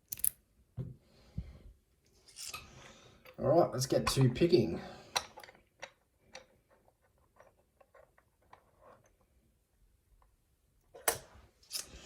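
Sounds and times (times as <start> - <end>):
lock pick clicks and scrapes: 0.0 - 0.4.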